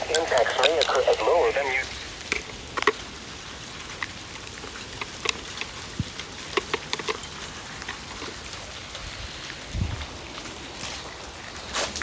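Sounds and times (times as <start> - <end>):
steady hiss: 0.0 - 2.6
hailstones striking a hard surface: 1.8 - 12.0.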